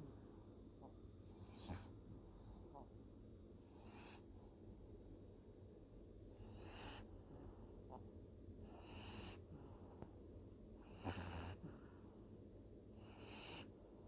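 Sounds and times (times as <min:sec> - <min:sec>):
pet snoring faintly: 0:00.0 - 0:02.9, 0:08.7 - 0:10.0, 0:10.8 - 0:12.1, 0:13.0 - 0:13.8.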